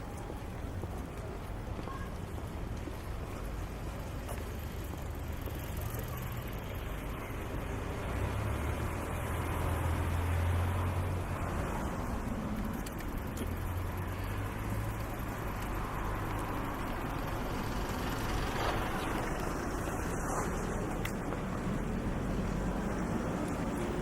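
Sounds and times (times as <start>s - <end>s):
steady traffic noise: 0.0s - 24.0s
vehicle engine rumble: 0.0s - 24.0s.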